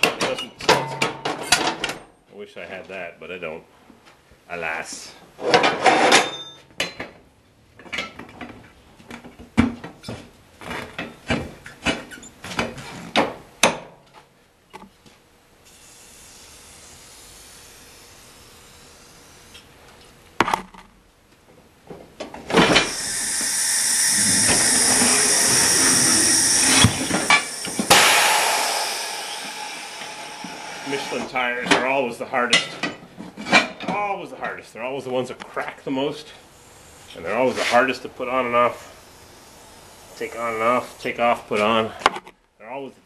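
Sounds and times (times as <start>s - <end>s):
loud rushing hiss: 15.6s - 19.6s, 22.6s - 31.7s, 36.4s - 41.6s.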